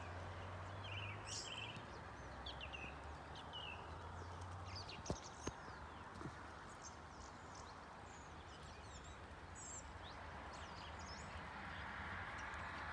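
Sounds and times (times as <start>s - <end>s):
birds chirping: 0.0s - 12.8s.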